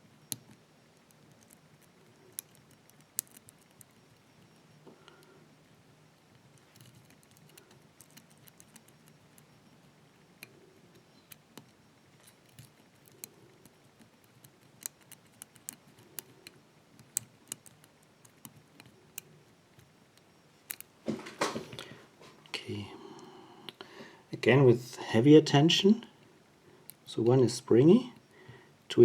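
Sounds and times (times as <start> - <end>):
lock pick clicking and scraping: 0.1 - 5.2, 6.3 - 21.0.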